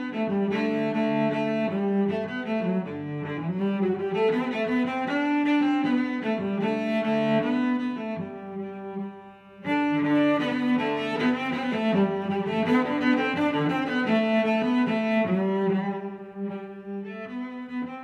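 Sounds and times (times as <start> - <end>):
bowed string music: 0.0 - 18.0.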